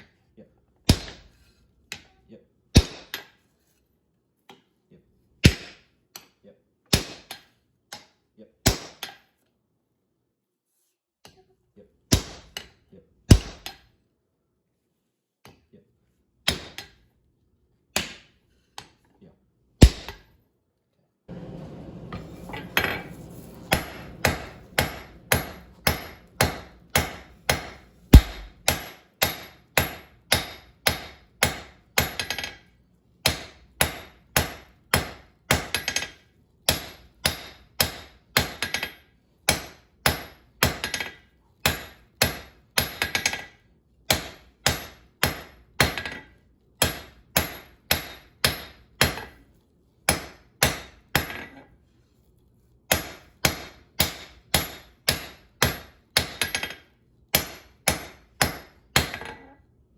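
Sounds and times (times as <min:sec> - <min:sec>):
hammer striking steel on anvil: 0:21.6 - 0:32.6, 0:33.2 - 0:49.4, 0:50.1 - 0:51.6, 0:52.9 - 0:59.4.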